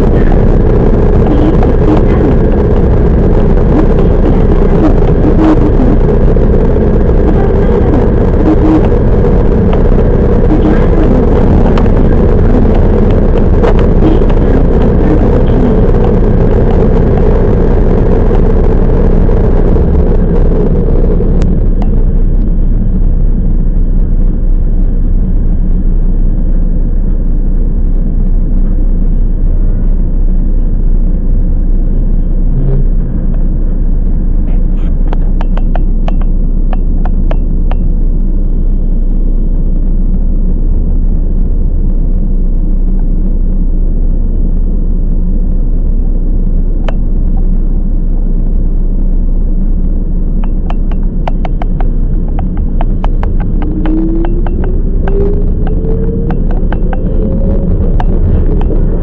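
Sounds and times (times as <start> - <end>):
sharp clicks: 50.4 - 58.8.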